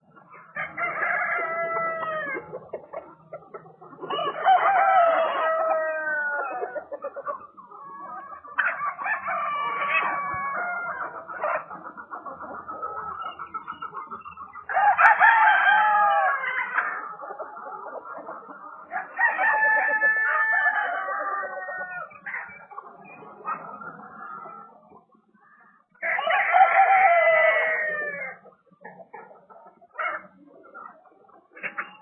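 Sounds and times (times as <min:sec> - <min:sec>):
roosters crowing: 0:00.4 - 0:02.6, 0:04.0 - 0:07.2, 0:07.8 - 0:11.7, 0:14.6 - 0:18.2, 0:18.9 - 0:24.8, 0:26.0 - 0:28.4
rapid clucking: 0:02.0 - 0:04.4, 0:09.7 - 0:15.2.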